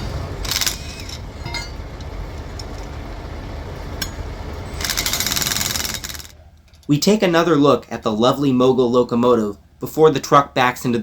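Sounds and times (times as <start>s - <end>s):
metal track parts clanking: 0.0s - 7.0s.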